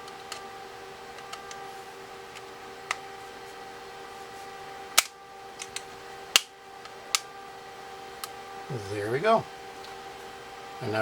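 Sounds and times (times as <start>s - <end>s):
plastic clips clicking and snapping: 5.0s - 6.5s.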